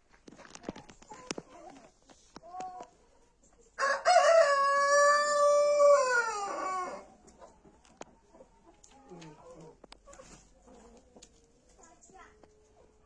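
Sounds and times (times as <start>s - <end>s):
chicken clucking: 0.8s - 13.0s
rooster crowing: 3.8s - 7.1s.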